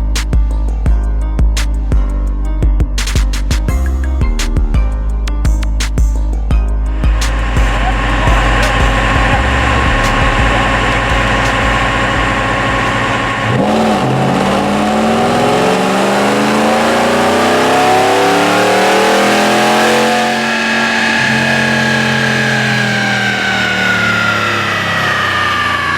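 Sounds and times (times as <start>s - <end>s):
deep bass sound: 0.0s - 21.6s
car engine revving: 6.9s - 25.9s.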